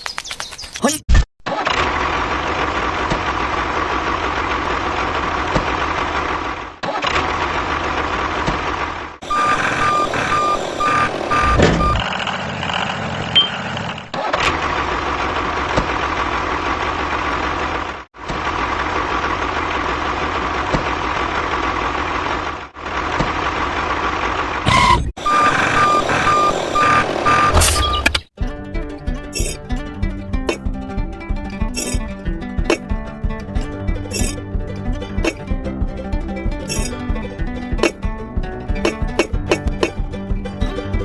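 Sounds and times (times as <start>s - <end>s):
truck engine running: 1.5s - 41.0s
reversing alarm beeping: 9.2s - 12.1s, 24.7s - 28.1s.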